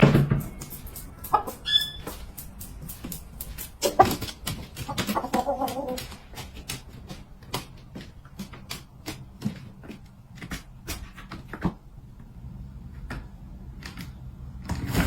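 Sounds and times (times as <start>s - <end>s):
sharp clicks and taps: 0.0s - 11.7s.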